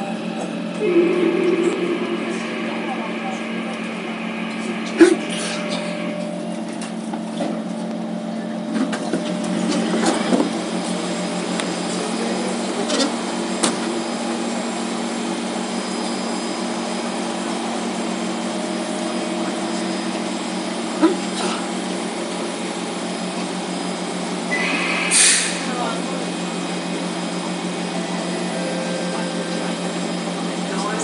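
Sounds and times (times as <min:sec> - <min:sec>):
train motor drone: 0:00.0 - 0:07.6.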